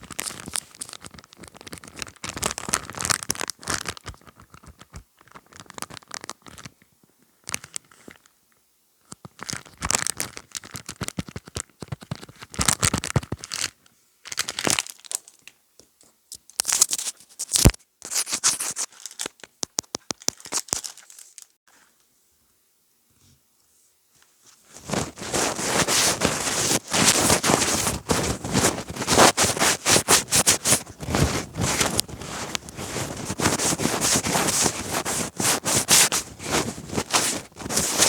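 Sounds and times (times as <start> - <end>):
close crinkling and scratching: 0.0 - 6.8, 9.2 - 13.7, 16.6 - 21.5, 24.5 - 38.0.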